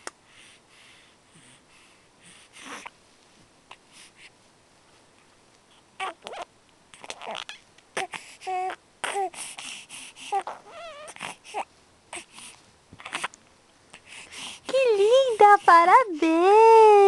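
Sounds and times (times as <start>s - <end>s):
baby making vocal sounds: 6.0s - 12.4s, 13.0s - 13.4s.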